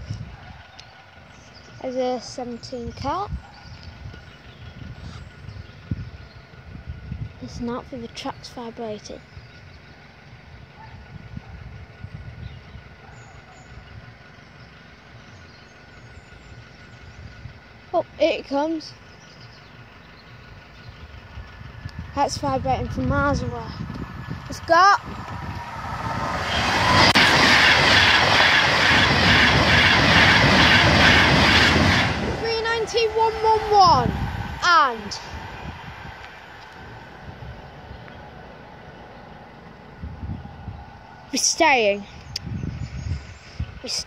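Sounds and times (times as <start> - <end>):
train passing at speed: 0.0 - 44.0
vehicles idling: 0.0 - 44.0.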